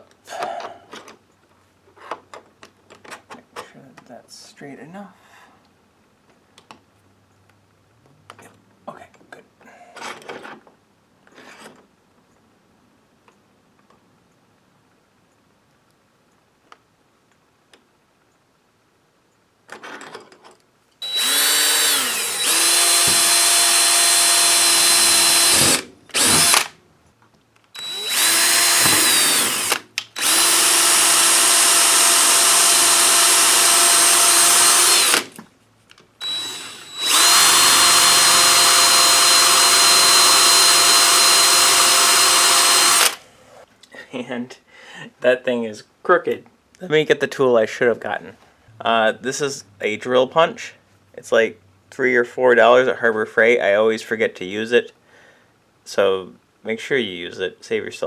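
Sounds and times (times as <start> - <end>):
electric drill whining: 21.0 - 26.7, 27.8 - 35.4, 36.2 - 43.3.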